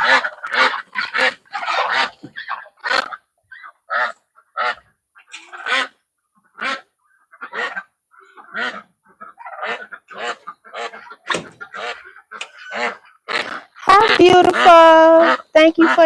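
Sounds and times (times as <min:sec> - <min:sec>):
poultry honking squawks: 0:05.4 - 0:05.9, 0:08.4 - 0:16.0.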